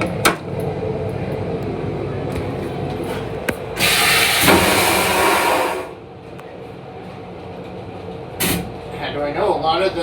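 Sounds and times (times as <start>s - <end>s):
toilet flush click: 3.8s - 5.9s
vacuum toilet rushing whoosh: 3.8s - 6.0s.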